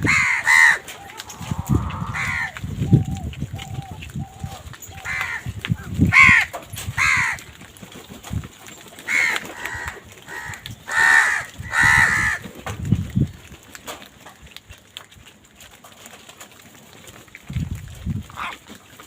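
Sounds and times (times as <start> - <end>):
crows cawing: 0.0 - 2.7, 4.5 - 7.5, 9.0 - 12.5, 18.4 - 18.6.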